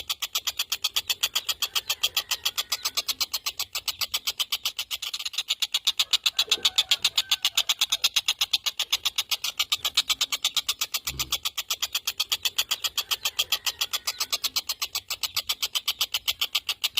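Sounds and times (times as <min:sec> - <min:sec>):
kingfisher rattling call: 0:00.0 - 0:16.9.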